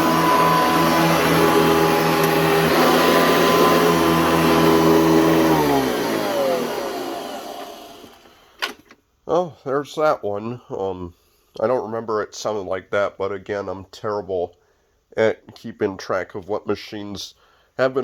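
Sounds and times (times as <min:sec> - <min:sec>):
vacuum cleaner running: 0:00.0 - 0:08.6.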